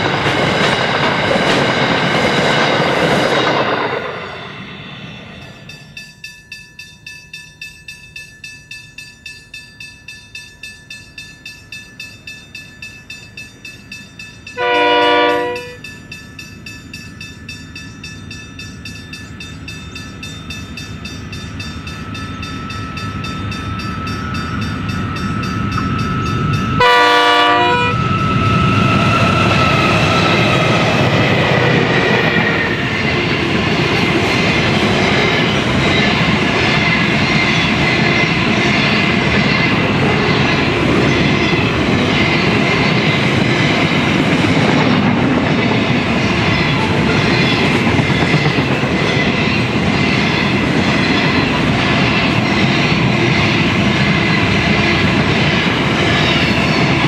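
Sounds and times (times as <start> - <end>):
train wagons rumbling and clacking: 0.0 - 57.0
train horn blast: 14.6 - 15.8, 26.8 - 28.1.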